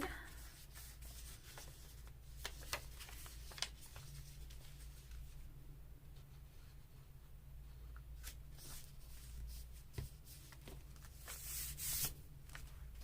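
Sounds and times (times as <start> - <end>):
paper rustling: 0.4 - 5.4, 8.2 - 13.0.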